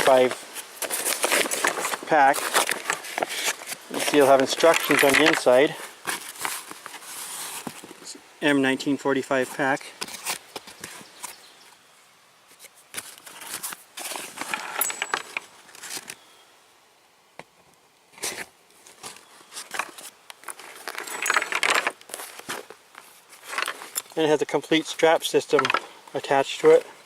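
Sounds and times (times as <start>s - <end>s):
canvas and webbing rustling: 0.0s - 8.2s, 12.6s - 16.2s, 18.2s - 25.9s
metal strap hardware jingling: 4.0s - 5.6s, 14.4s - 15.4s, 20.8s - 21.9s.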